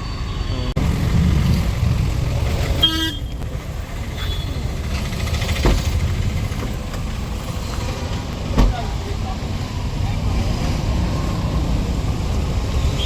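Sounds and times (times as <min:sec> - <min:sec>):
road traffic rumbling: 0:00.0 - 0:13.0
vehicle horn toot: 0:02.8 - 0:03.4, 0:04.1 - 0:04.6.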